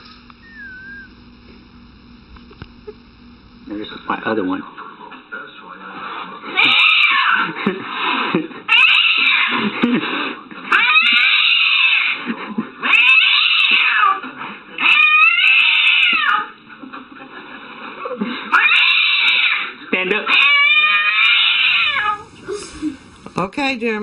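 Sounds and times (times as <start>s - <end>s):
cat yowling: 6.6s - 7.5s, 8.7s - 9.6s, 10.7s - 12.2s, 12.8s - 14.2s, 14.8s - 16.5s, 18.5s - 19.7s, 20.3s - 22.3s.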